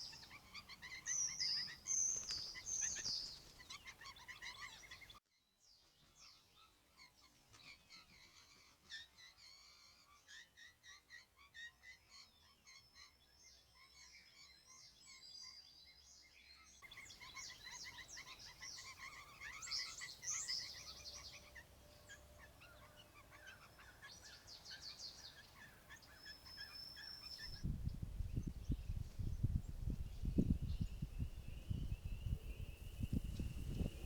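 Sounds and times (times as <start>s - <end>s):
birds chirping and calling: 0.0s - 5.2s, 16.9s - 34.0s.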